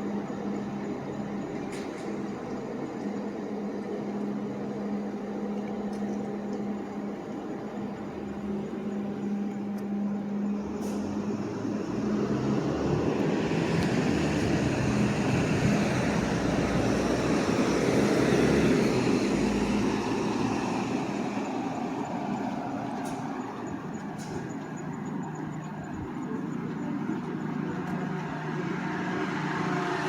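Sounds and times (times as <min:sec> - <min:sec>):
vehicle passing by: 0:10.9 - 0:23.0, 0:27.7 - 0:30.0.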